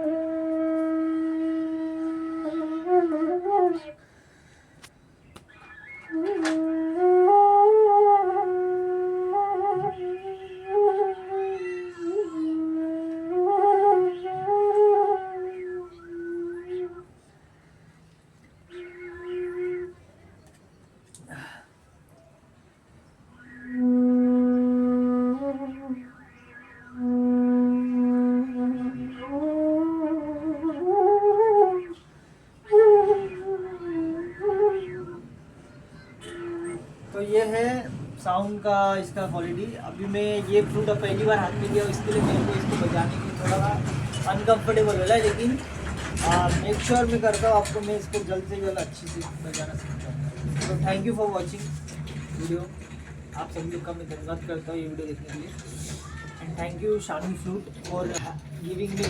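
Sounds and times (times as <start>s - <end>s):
bamboo flute playing: 0.0s - 4.1s, 5.5s - 17.3s, 18.6s - 20.4s, 23.2s - 37.8s.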